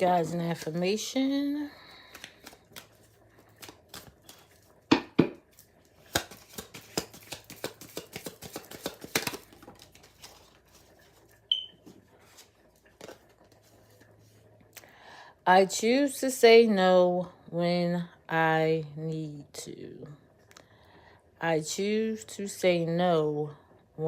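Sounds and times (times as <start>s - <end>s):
cards being shuffled: 2.0s - 4.7s, 5.5s - 14.4s.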